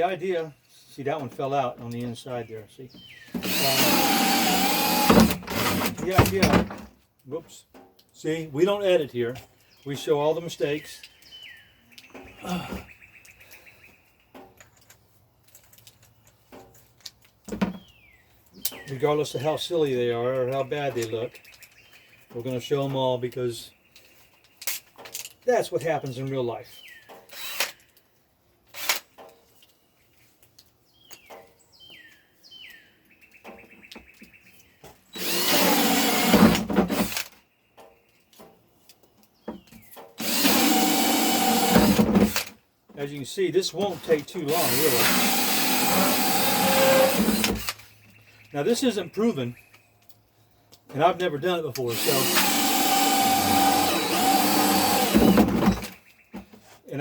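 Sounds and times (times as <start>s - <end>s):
birds singing: 0.1s - 5.1s, 7.6s - 14.9s, 17.7s - 28.2s, 29.1s - 36.4s, 37.3s - 41.9s, 42.8s - 57.0s
cordless drill boring plastic: 3.3s - 6.4s, 35.2s - 37.3s, 40.2s - 42.5s, 44.5s - 47.8s, 51.9s - 55.9s.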